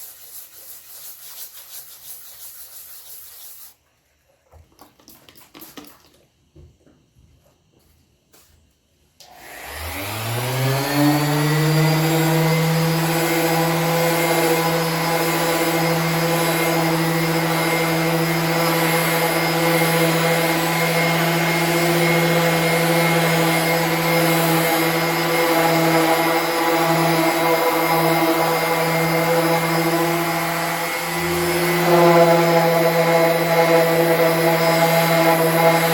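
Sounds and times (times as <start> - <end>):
electric polisher motor: 9.2 - 35.9.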